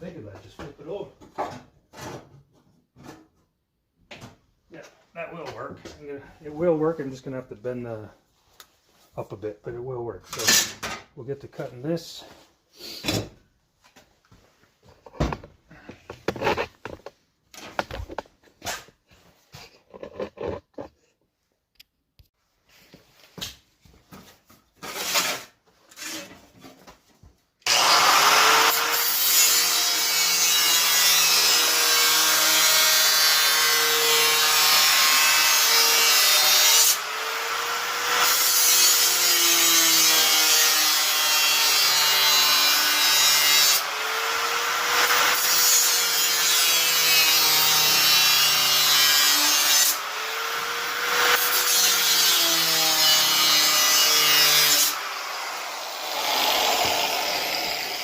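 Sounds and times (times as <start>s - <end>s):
power tool cutting sheet metal: 27.7s - 58.0s.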